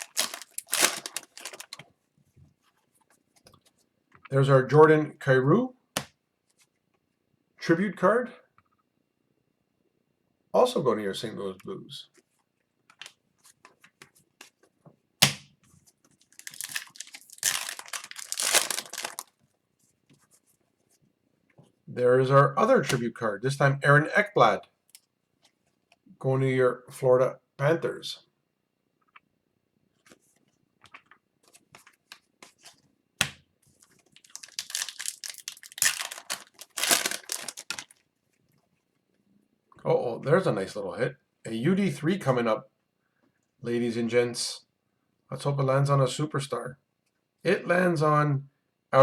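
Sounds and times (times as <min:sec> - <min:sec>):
foil wrapper tearing and crinkling: 0:00.0 - 0:01.8, 0:16.3 - 0:19.4, 0:34.2 - 0:38.0
trading cards flicking and rustling: 0:00.0 - 0:01.9, 0:16.2 - 0:19.3, 0:33.8 - 0:38.0.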